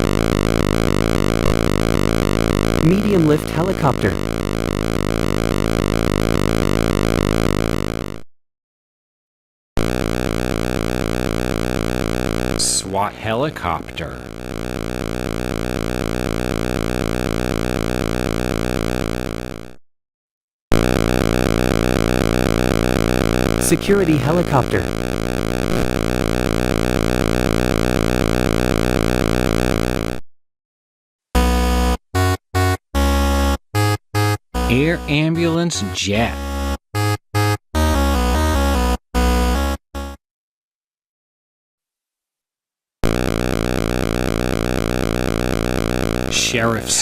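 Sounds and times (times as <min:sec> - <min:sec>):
synthesizer music: 0:00.0 - 0:08.0, 0:09.8 - 0:19.7, 0:20.8 - 0:30.2, 0:33.0 - 0:36.8, 0:43.0 - 0:47.0.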